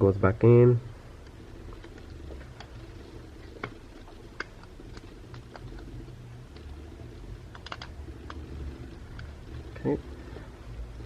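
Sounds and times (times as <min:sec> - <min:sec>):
low steady hum: 0:00.0 - 0:11.0
small parts clicking and tapping: 0:01.1 - 0:11.0.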